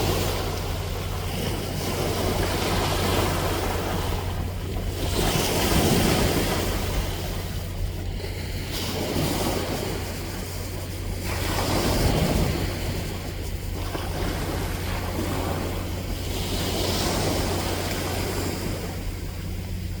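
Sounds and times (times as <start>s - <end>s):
ocean waves washing onto shore: 0.0s - 20.0s
wind rumbling on microphone: 0.0s - 20.0s.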